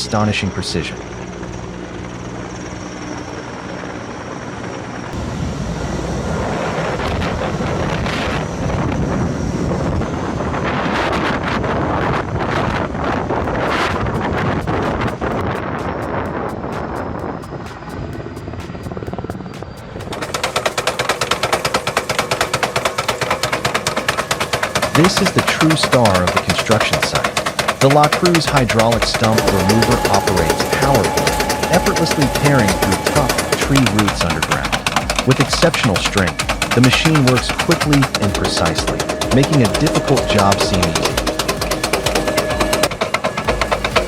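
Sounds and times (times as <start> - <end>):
helicopter engine and rotor hum: 0.0 - 44.0
wind on microphone: 5.2 - 20.4
heavy machinery rattling: 19.8 - 44.0.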